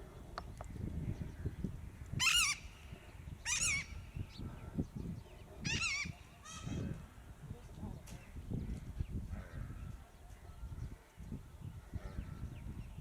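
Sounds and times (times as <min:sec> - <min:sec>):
peacock calling: 0:02.2 - 0:02.8, 0:03.4 - 0:04.2, 0:05.7 - 0:06.8.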